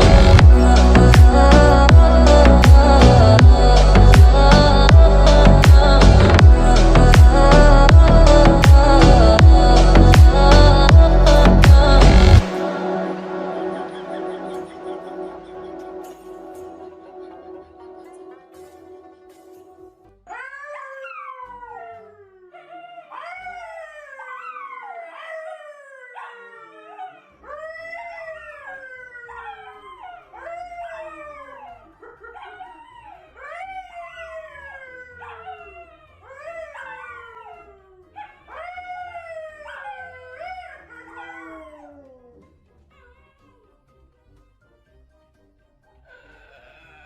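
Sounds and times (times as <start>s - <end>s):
pet animal howling: 20.3s - 43.5s.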